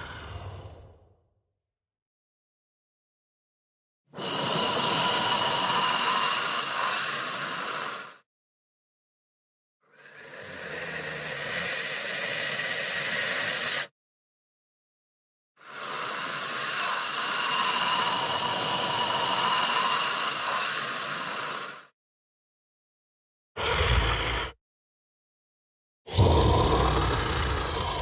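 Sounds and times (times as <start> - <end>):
creature breathy hisses: 0.0 - 1.0, 4.2 - 8.2, 9.9 - 13.9, 15.6 - 21.9, 23.6 - 24.6, 26.1 - 28.0
creature low growl: 0.0 - 1.2, 16.0 - 21.8, 23.6 - 24.6, 26.1 - 28.0.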